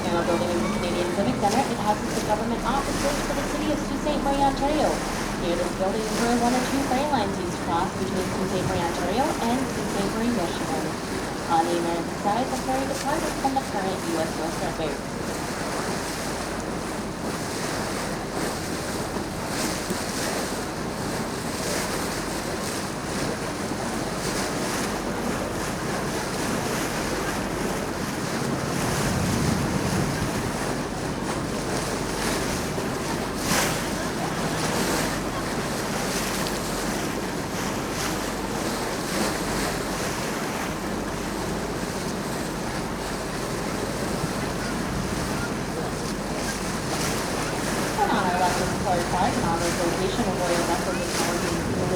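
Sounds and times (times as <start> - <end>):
wind buffeting microphone: 0.0 - 13.9, 27.9 - 40.1, 40.7 - 51.9
water rushing along boat hull: 0.0 - 51.9.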